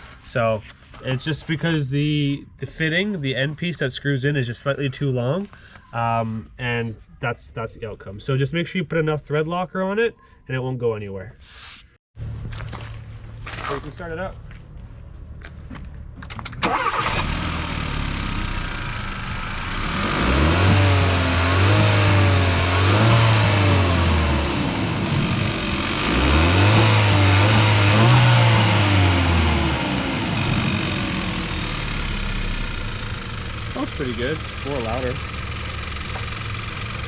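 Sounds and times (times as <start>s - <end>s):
car engine starting and idling: 12.2s - 37.0s
car engine revving: 16.6s - 37.0s.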